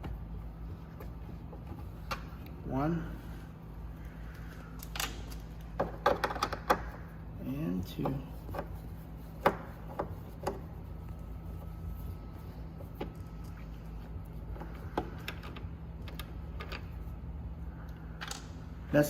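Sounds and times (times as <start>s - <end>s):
steady low hum: 0.0s - 19.0s
clicks and knocks of parts loosened: 4.3s - 7.1s, 14.5s - 17.0s.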